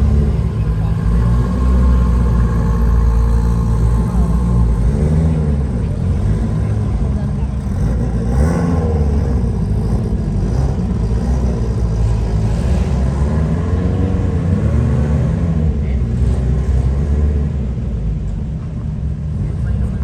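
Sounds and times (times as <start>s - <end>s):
rally car engine revving: 0.0s - 20.0s.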